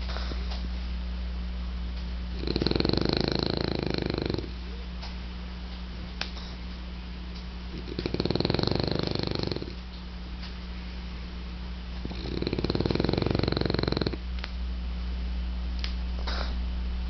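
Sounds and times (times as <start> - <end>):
dog snoring: 2.3 - 4.8, 7.7 - 9.8, 12.0 - 14.2, 16.2 - 16.6
dog breathing: 2.4 - 4.6, 7.7 - 9.8, 12.0 - 14.2.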